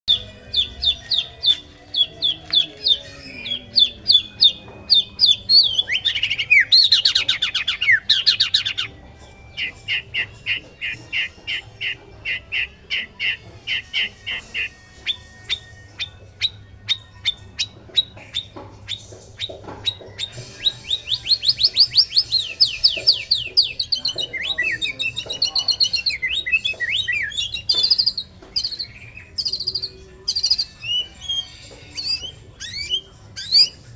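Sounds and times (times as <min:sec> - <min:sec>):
songbird whistling and trilling: 0:00.1 - 0:08.9, 0:09.5 - 0:33.9.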